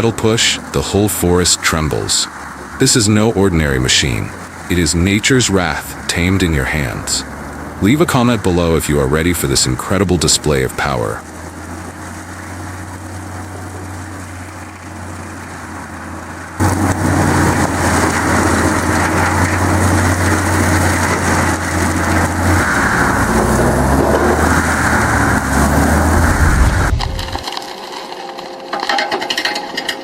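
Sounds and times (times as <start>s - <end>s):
stump grinder engine humming: 0.0s - 27.6s
harsh grinding noise: 16.6s - 27.5s.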